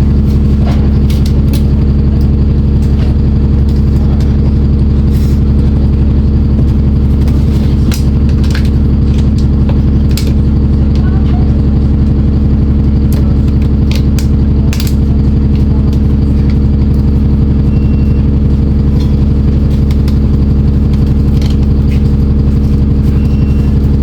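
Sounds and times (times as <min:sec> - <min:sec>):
bus diesel engine running: 0:00.0 - 0:24.0
short rattles and clicks: 0:06.5 - 0:24.0.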